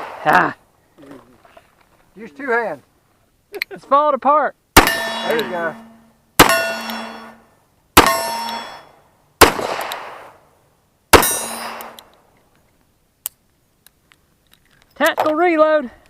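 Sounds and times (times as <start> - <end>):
pistol shots: 4.8 - 5.8, 6.4 - 7.3, 8.0 - 8.8, 9.4 - 10.4, 11.1 - 12.1
steel target ringing: 4.8 - 9.0, 11.2 - 12.0
sharp click: 11.6 - 12.2.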